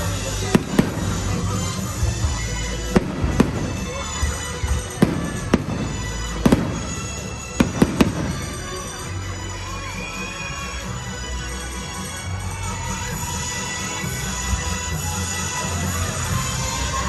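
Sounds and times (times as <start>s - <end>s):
fireworks bursting with sharp bangs: 0.0s - 10.5s
loud music: 0.0s - 17.0s.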